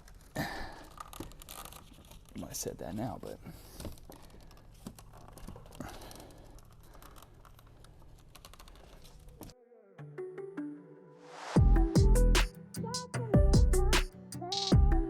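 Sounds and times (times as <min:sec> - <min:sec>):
plastic parts clicking: 0:00.0 - 0:02.4, 0:03.8 - 0:09.5
quiet electronic music: 0:09.7 - 0:15.0.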